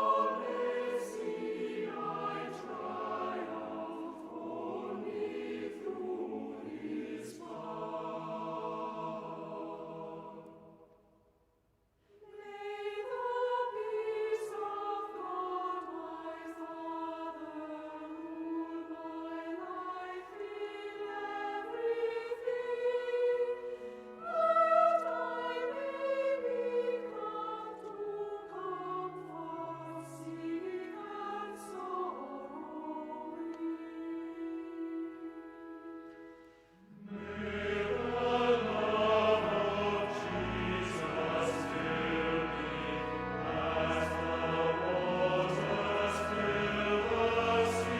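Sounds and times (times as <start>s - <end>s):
choir singing sacred music: 0.0s - 11.1s, 12.2s - 47.9s.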